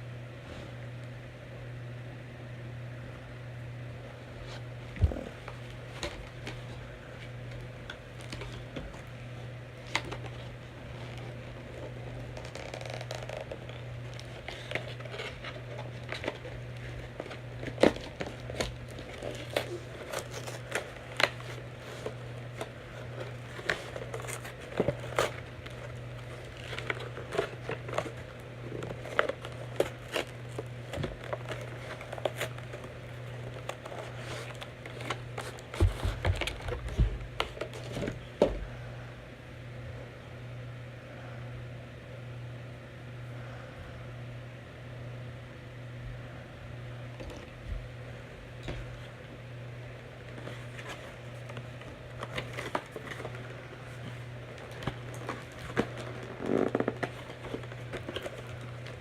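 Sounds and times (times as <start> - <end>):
steady low hum: 0.0 - 59.0
packaging crinkling: 5.1 - 38.3, 49.9 - 59.0.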